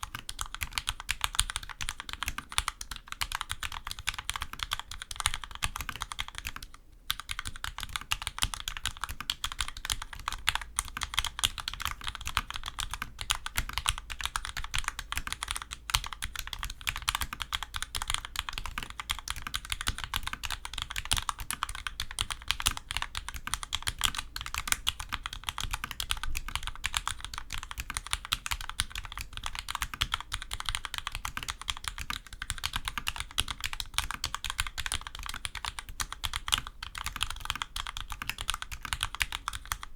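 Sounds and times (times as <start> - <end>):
fast typing on mechanical keyboard: 0.0 - 39.9.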